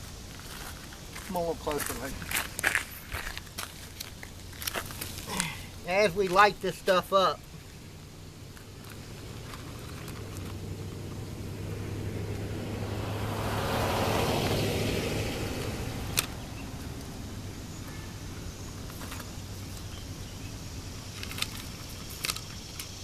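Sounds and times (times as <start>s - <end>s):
steady low hum: 2.1s - 23.0s
vehicle passing by: 8.0s - 21.1s.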